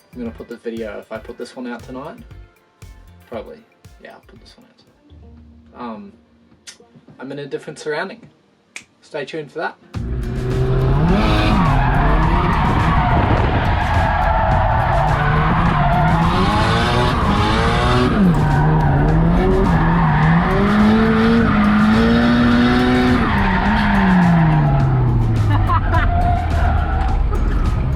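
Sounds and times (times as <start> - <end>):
car engine revving: 10.0 - 27.9
tyres skidding and squealing: 10.2 - 27.9.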